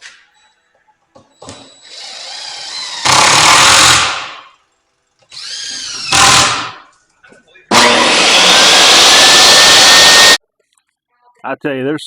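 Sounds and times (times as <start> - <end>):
table saw cutting wood: 2.0 - 4.4, 5.4 - 6.8, 7.7 - 10.4.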